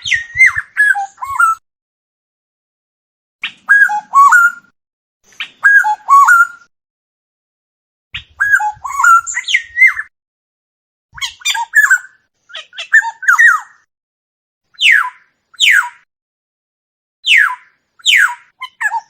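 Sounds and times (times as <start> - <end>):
oriole song fluty whistles: 0.0 - 1.6, 3.6 - 4.7, 5.6 - 6.7, 8.4 - 10.1, 14.8 - 16.0, 17.2 - 18.4.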